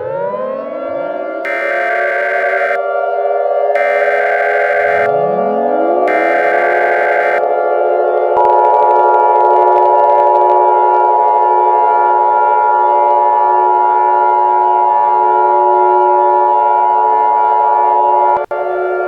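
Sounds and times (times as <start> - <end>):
steady electronic alarm chord: 1.4 - 2.8, 3.8 - 5.3, 6.1 - 7.5.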